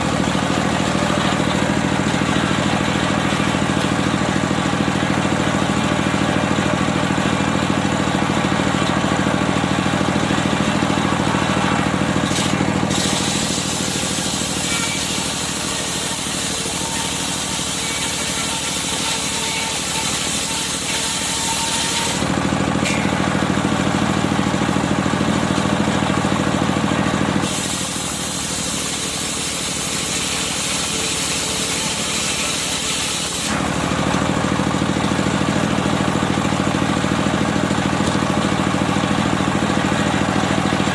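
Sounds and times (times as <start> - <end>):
engine drone: 0.0 - 40.9
circular saw cutting wood: 10.3 - 23.9, 27.4 - 34.1.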